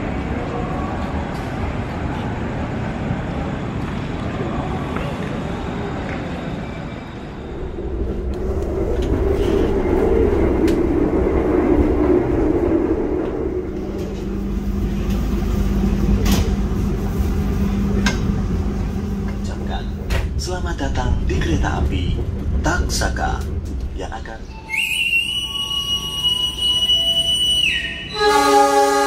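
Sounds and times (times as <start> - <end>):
train rumbling past: 0.0 - 29.0
sharp clacks of train: 3.7 - 7.3, 13.2 - 18.5, 19.2 - 24.6
low hum: 7.2 - 26.9.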